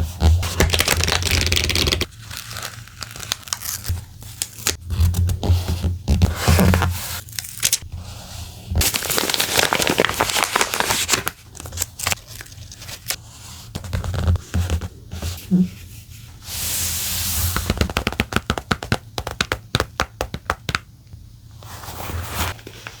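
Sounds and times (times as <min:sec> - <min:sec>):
paper rustling: 0:00.4 - 0:04.8, 0:08.8 - 0:15.4
paper peeling and crinkling: 0:00.4 - 0:05.1, 0:06.6 - 0:07.8, 0:08.8 - 0:14.4.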